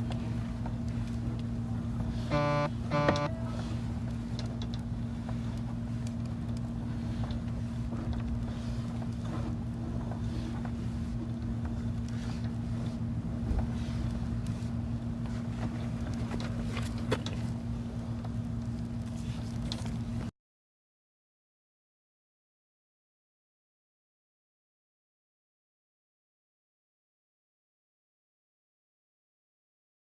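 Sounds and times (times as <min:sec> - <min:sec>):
low machine hum: 0:00.0 - 0:20.3
faint clicks and ticks: 0:04.0 - 0:12.6.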